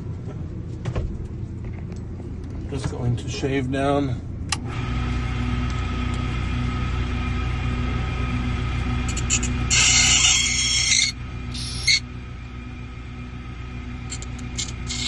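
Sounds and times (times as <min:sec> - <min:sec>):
power tool motor humming: 0:09.0 - 0:12.0, 0:14.1 - 0:15.0
metal grinding: 0:09.0 - 0:12.1, 0:14.0 - 0:15.0.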